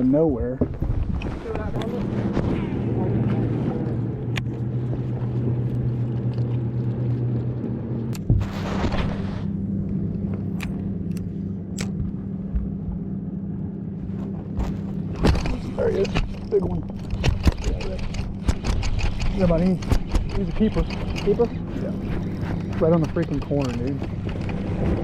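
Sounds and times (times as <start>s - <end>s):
boat motor humming: 0.0s - 25.0s
rush of noise: 7.8s - 13.0s
sharp clicks: 10.3s - 12.0s.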